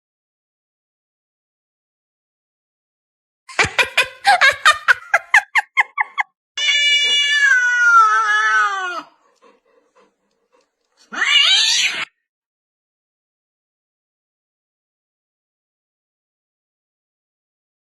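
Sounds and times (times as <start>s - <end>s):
cat meowing: 6.6s - 9.1s, 11.0s - 12.1s.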